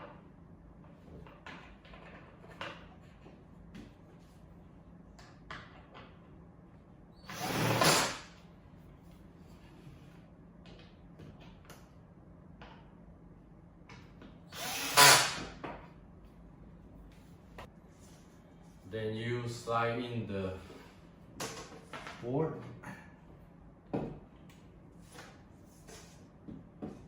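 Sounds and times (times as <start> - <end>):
cordless drill driving screws: 7.3 - 8.3, 14.5 - 15.5.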